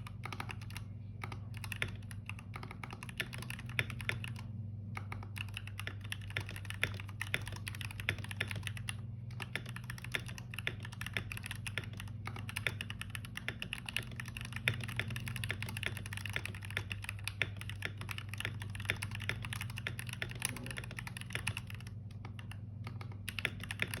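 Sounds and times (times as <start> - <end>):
keyboard typing: 0.0 - 24.0
steady low hum: 0.0 - 24.0.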